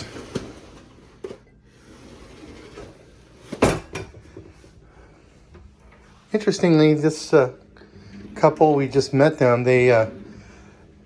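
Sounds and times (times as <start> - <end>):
drawer knocking shut: 3.4 - 4.2.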